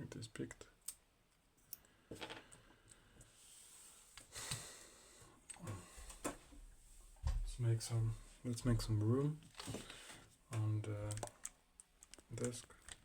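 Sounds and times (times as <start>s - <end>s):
lock clicking and handling: 11.0s - 13.0s.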